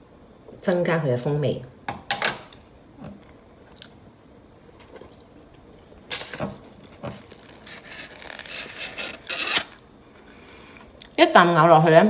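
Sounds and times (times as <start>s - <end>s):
person chewing food: 3.6s - 4.1s, 4.8s - 6.0s.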